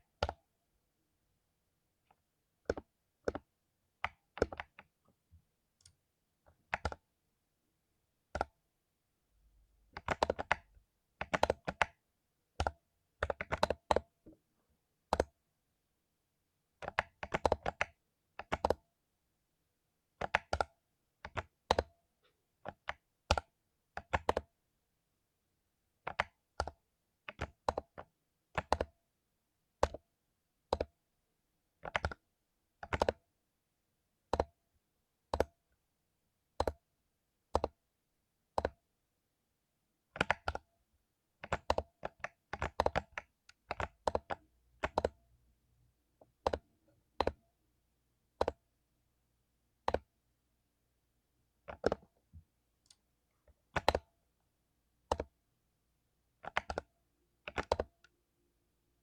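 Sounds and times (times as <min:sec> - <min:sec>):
typing on mechanical keyboard: 0:02.6 - 0:04.9, 0:06.6 - 0:07.1, 0:08.3 - 0:08.6, 0:09.9 - 0:12.0, 0:12.6 - 0:14.2, 0:15.1 - 0:15.4, 0:16.8 - 0:18.8, 0:20.2 - 0:21.9, 0:22.7 - 0:24.6, 0:26.1 - 0:29.0, 0:29.8 - 0:30.0, 0:30.7 - 0:31.0, 0:31.8 - 0:33.2, 0:35.3 - 0:35.6, 0:36.6 - 0:36.9, 0:37.5 - 0:37.8, 0:38.6 - 0:38.8, 0:40.2 - 0:40.7, 0:41.4 - 0:45.2, 0:46.2 - 0:47.4, 0:48.3 - 0:48.6, 0:49.8 - 0:50.1, 0:51.6 - 0:52.2, 0:53.7 - 0:54.1, 0:55.0 - 0:55.4, 0:56.4 - 0:58.1.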